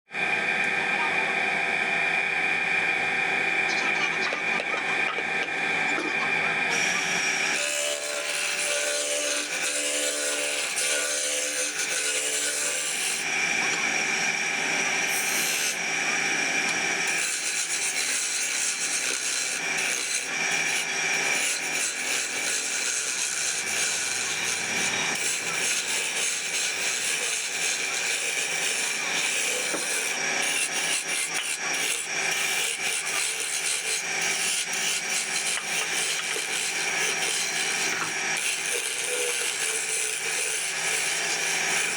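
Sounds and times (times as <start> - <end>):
tool rasping on spinning wood: 6.7 - 13.4, 17.0 - 41.9.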